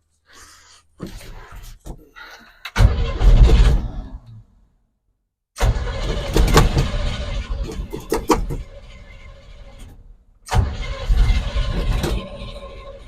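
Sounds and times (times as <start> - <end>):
pickup truck engine cranking and starting: 2.6 - 4.4, 5.6 - 13.0.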